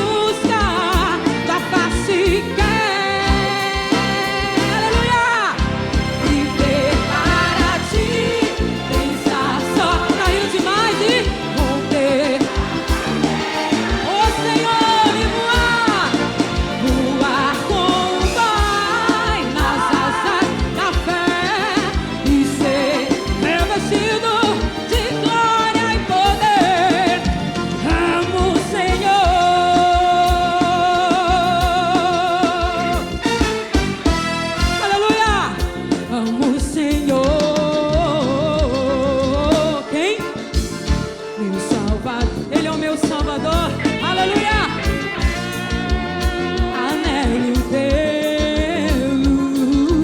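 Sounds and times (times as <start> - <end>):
band with accordion and horns: 0.0 - 50.0.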